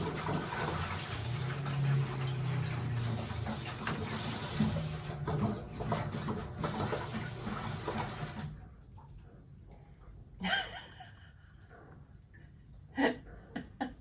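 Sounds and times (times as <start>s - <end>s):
water rushing into washing machine: 0.0s - 8.6s.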